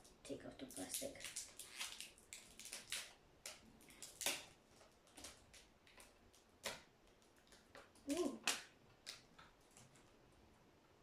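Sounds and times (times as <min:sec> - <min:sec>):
plastic film peeling crinkles: 0:00.6 - 0:10.1.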